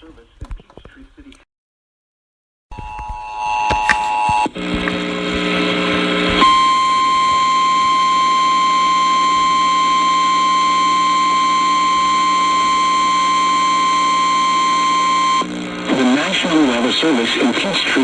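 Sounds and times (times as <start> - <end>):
steady high alarm tone: 2.7 - 4.6, 6.4 - 15.4
radio hiss and hum: 2.7 - 18.0.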